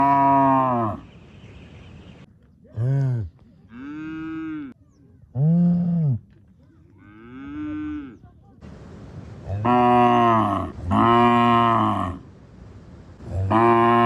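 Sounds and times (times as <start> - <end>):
cattle mooing: 0.0 - 1.0, 2.8 - 4.8, 9.5 - 12.2, 13.2 - 14.0.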